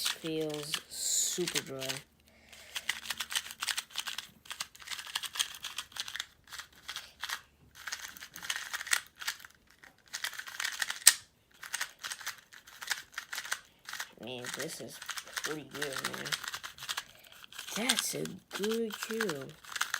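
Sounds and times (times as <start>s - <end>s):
puzzle cube plastic clicks: 0.0s - 19.9s
sharp plastic snap: 11.0s - 11.3s.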